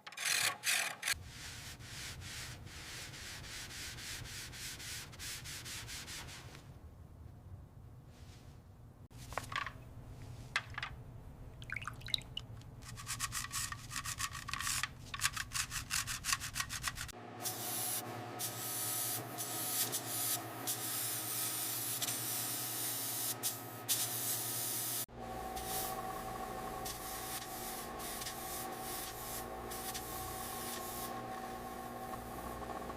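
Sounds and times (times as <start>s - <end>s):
sanding strokes: 0.2s - 6.5s, 26.8s - 31.4s.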